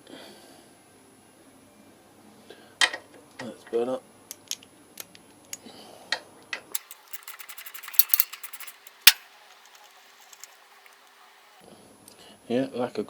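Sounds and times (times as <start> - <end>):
metallic tool clicks: 6.8 - 11.6.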